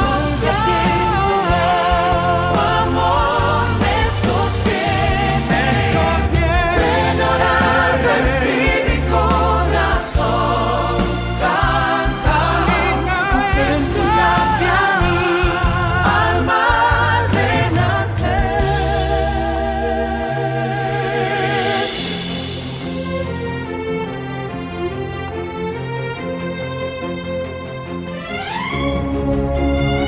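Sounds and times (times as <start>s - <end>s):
worship song with choir: 0.0s - 24.6s.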